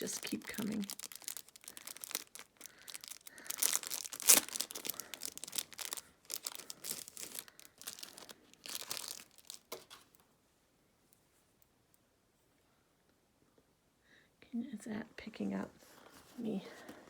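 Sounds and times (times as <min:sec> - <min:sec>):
packaging crinkling and tearing: 0:00.0 - 0:10.2.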